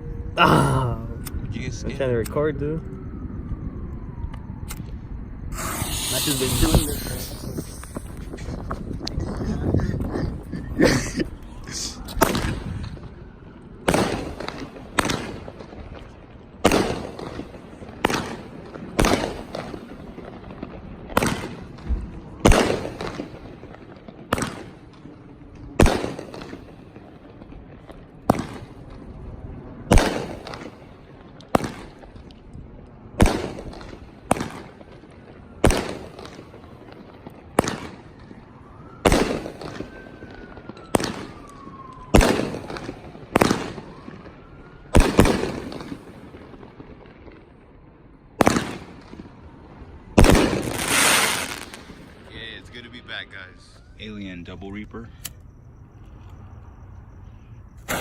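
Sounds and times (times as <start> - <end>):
firework shells banging: 5.5 - 9.4.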